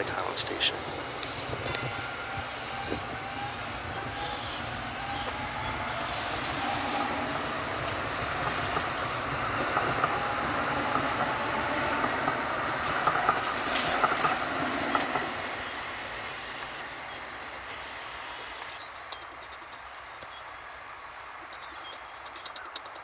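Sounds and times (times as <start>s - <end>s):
light rail train passing: 0.0s - 23.0s.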